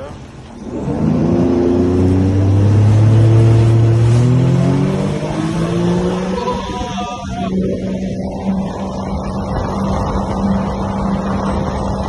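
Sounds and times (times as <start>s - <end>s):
jet ski engine running hard: 0.0s - 12.0s.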